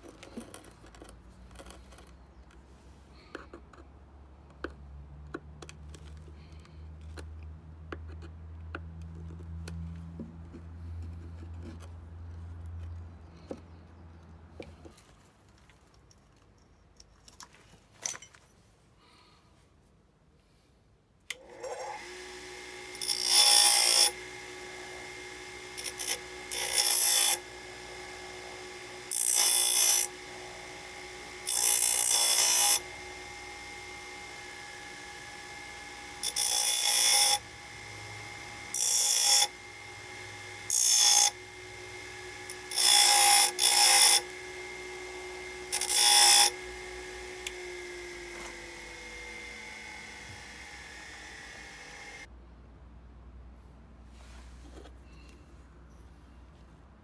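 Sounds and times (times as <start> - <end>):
power tool whining: 21.4 - 52.3
tool grinding into metal: 21.4 - 52.3.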